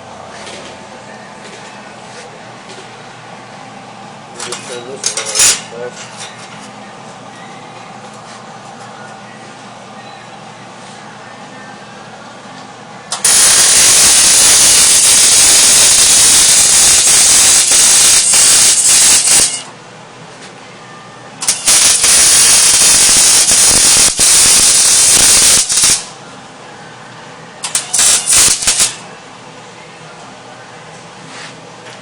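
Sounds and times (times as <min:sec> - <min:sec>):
welding arc crackling and hissing: 0:13.2 - 0:19.6, 0:21.4 - 0:26.1, 0:27.7 - 0:29.0.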